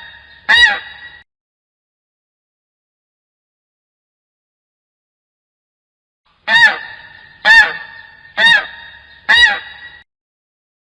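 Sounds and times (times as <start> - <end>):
goose honking: 0.0 - 1.0, 6.5 - 10.0.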